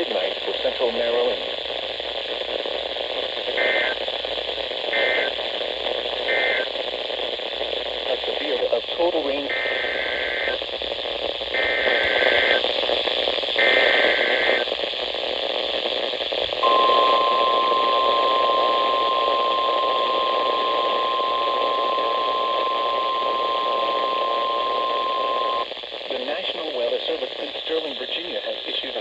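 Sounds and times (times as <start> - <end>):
radio hiss: 0.0 - 29.0
steady warning alarm tone: 16.6 - 25.6.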